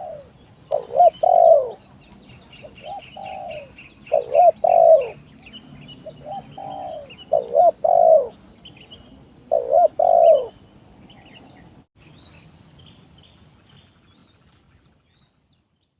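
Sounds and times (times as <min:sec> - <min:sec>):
dove cooing: 0:00.0 - 0:01.8, 0:02.6 - 0:05.2, 0:06.0 - 0:08.4, 0:09.5 - 0:10.6
small birds chirping: 0:00.0 - 0:15.9.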